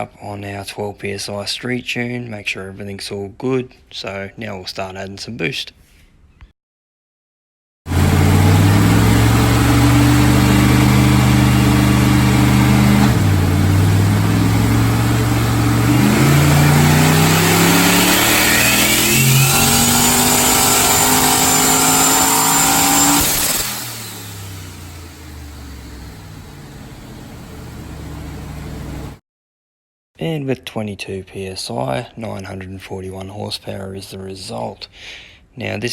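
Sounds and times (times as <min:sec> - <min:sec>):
engine revving at full throttle: 0:07.9 - 0:29.2
high rising turbo whistle: 0:07.9 - 0:29.2.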